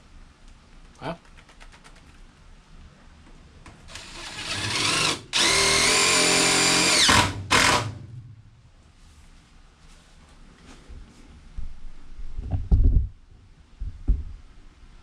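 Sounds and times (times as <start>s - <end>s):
cordless drill whirring: 3.9s - 8.0s.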